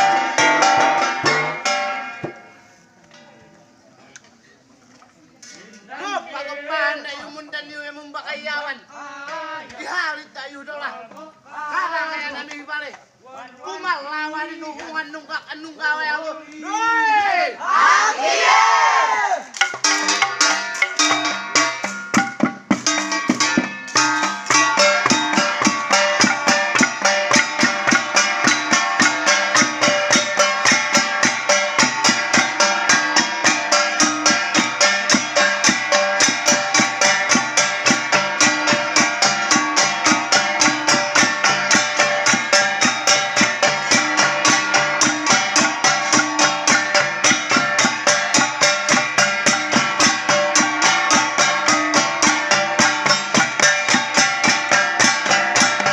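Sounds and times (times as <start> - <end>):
gongs beaten in rhythm: 0.0 - 2.7, 19.6 - 55.9.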